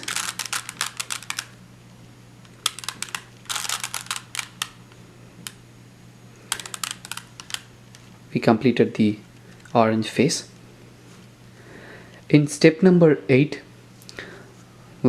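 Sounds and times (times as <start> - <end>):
puzzle cube clicking: 0.0 - 1.5, 2.6 - 4.8, 6.5 - 7.7.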